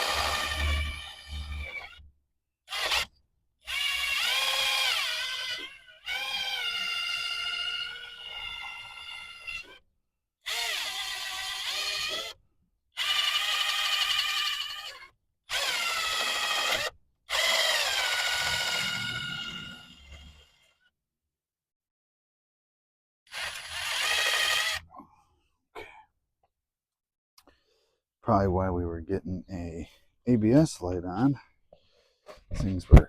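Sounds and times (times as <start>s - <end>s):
power tool whining: 0.0s - 2.1s, 2.7s - 9.8s, 10.4s - 12.4s, 13.0s - 20.8s, 23.3s - 25.0s.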